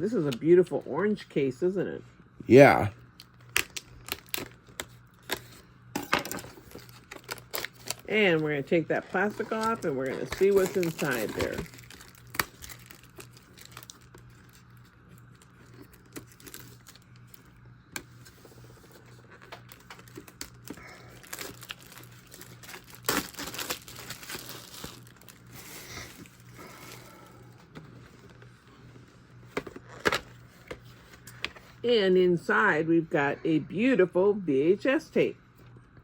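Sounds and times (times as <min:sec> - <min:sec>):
plastic shrink-wrap crinkling: 0:03.2 - 0:27.5.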